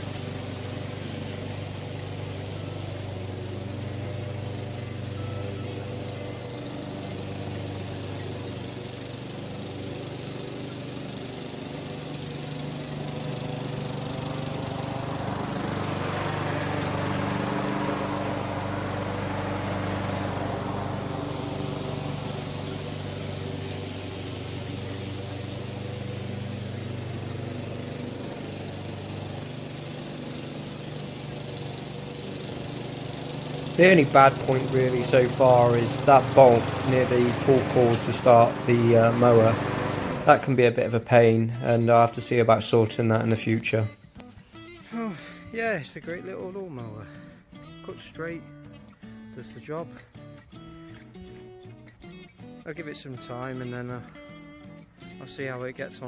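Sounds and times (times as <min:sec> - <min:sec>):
lawn mower engine running: 0:00.0 - 0:44.2.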